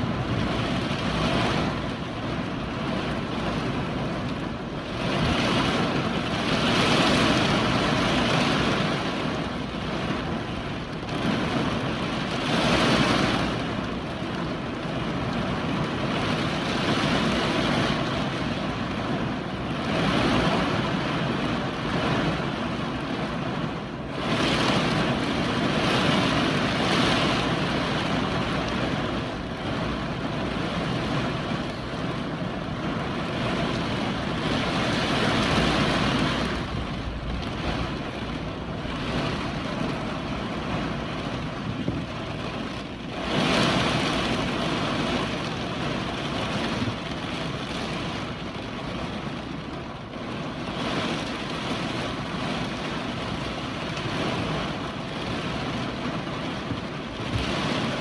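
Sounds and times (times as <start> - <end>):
strong gusting wind: 0.0 - 58.0.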